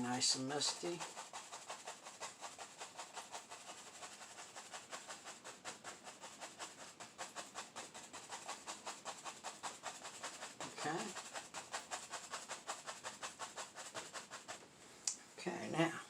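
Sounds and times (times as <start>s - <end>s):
brush scrubbing over canvas: 0.0s - 14.9s.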